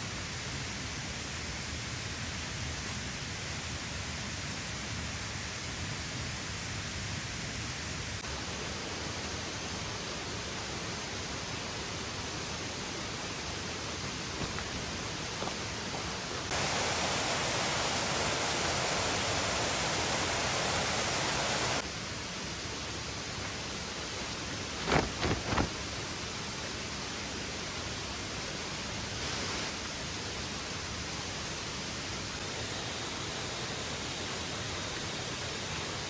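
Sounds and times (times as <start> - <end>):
rushing water hiss: 7.9 - 36.0.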